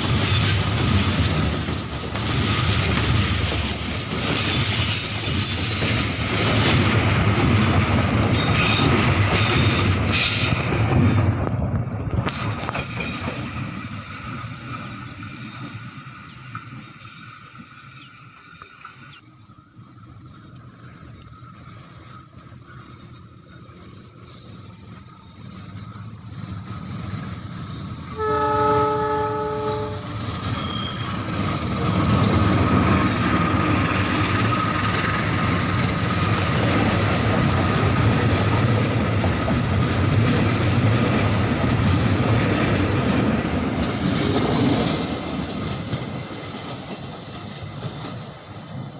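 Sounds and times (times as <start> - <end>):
train cars rumbling past: 0.0 - 48.9
wheels clattering on rails: 0.0 - 48.9
train horn blast: 28.1 - 31.0.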